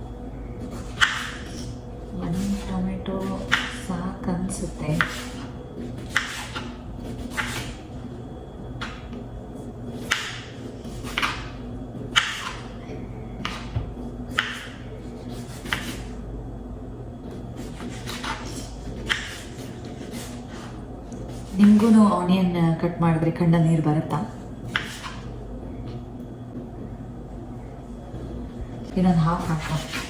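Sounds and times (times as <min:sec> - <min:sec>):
knife slicing on a cutting board: 0:05.0 - 0:07.8, 0:14.4 - 0:16.1, 0:17.6 - 0:21.8, 0:24.7 - 0:25.2.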